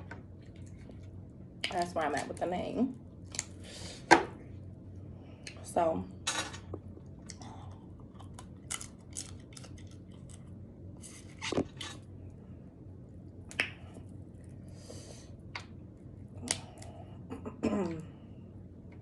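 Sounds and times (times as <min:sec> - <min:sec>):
close-up chewing: 0:06.7 - 0:12.0
seafood shells cracking: 0:08.1 - 0:10.6.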